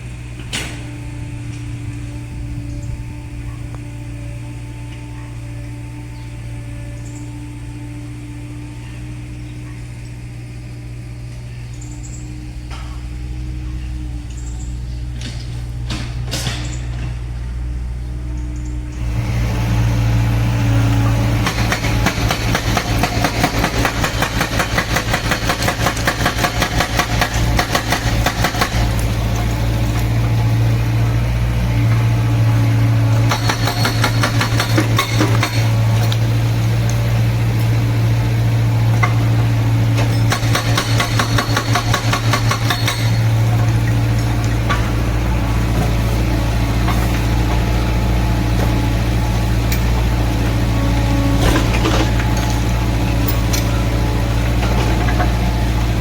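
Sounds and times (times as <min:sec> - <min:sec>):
excavator engine running: 0:00.0 - 0:56.0
hydraulic breaker hammering: 0:19.0 - 0:56.0.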